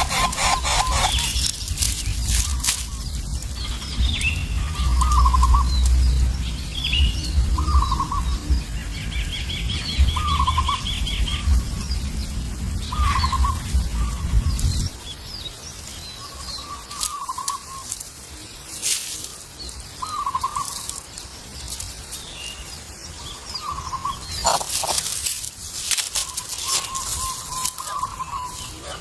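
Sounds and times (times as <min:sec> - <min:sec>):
bird slurred call: 0:00.0 - 0:01.4
bird fast trill: 0:00.0 - 0:01.5
low rumble: 0:01.1 - 0:15.2.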